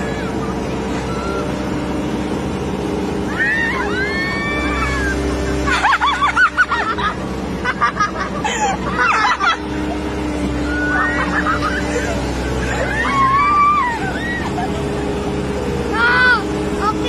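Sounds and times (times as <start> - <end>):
bulldozer engine running: 0.0 - 17.0
excited squeals and shouts: 3.2 - 5.9, 10.5 - 15.0.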